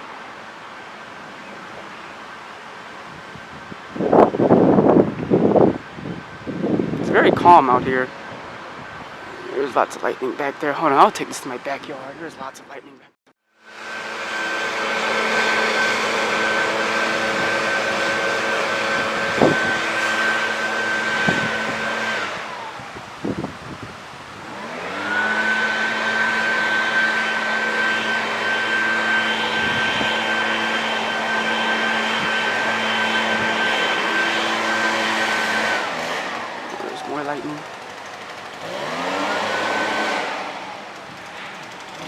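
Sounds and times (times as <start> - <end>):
electric motor whirring: 13.9 - 23.0, 24.5 - 42.0.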